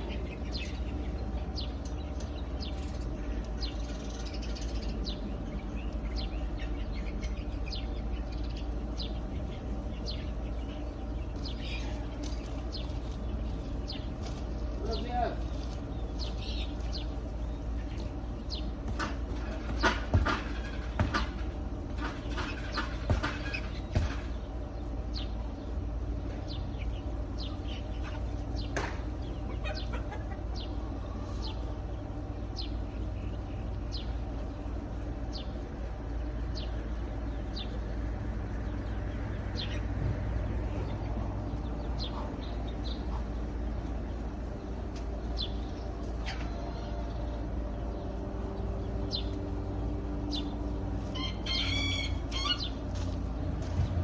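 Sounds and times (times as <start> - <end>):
birds chirping: 0.0 - 54.0
steady low hum: 0.0 - 54.0
sharp knocks: 18.9 - 24.4.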